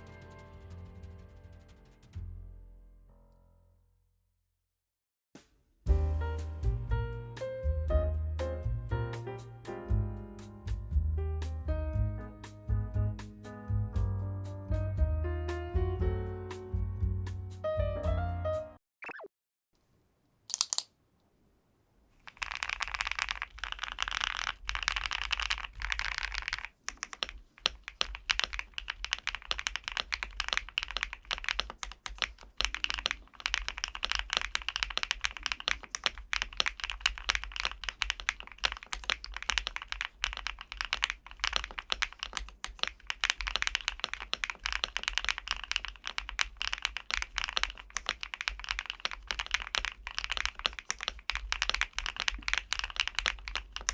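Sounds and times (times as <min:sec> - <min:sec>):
mechanical keyboard typing: 0:20.5 - 0:20.9, 0:22.2 - 0:53.9.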